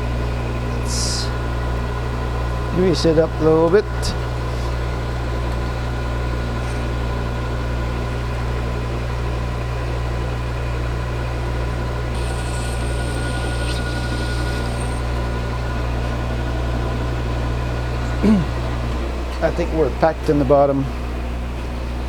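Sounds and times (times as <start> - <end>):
metal lathe humming: 11.8 - 18.2.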